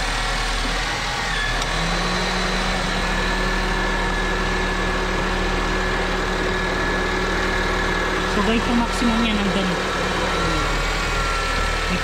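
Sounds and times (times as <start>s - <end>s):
car engine idling: 2.5s - 12.0s.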